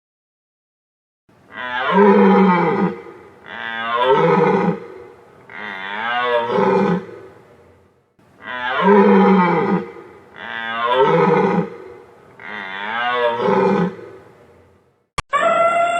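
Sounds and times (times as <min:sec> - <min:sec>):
large animal calling: 0:01.5 - 0:07.4, 0:08.4 - 0:14.2.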